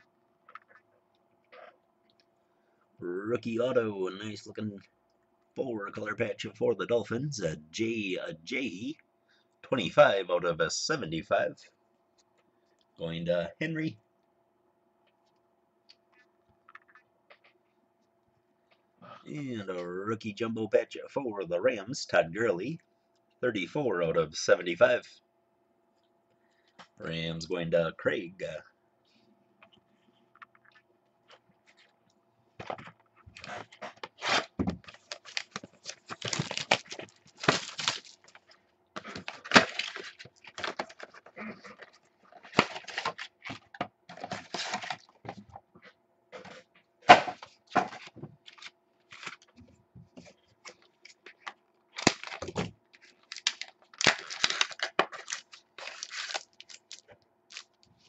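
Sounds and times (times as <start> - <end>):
cards rustling and clicking: 32.6 - 45.4, 47.3 - 58.0
foil wrappers crinkling: 33.3 - 45.2, 50.6 - 58.0
card packs tearing open: 33.4 - 43.6, 44.2 - 45.1, 51.9 - 57.9.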